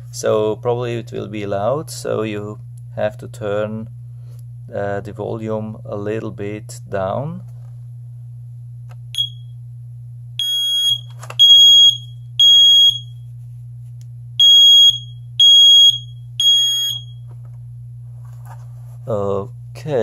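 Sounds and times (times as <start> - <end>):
low steady hum: 0.0 - 20.0
smoke alarm beeps: 9.2 - 9.6, 10.4 - 13.2, 14.4 - 17.3.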